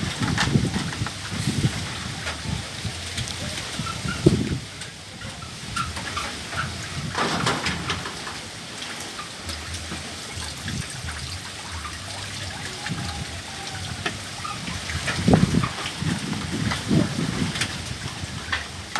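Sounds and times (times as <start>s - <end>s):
wind buffeting microphone: 0.0s - 18.9s.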